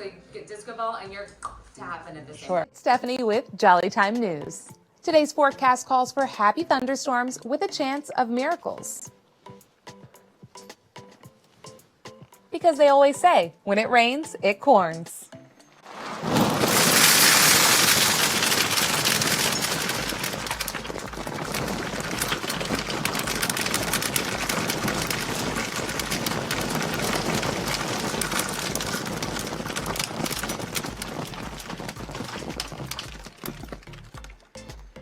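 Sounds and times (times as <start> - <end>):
popcorn pouring down: 15.8 - 35.0.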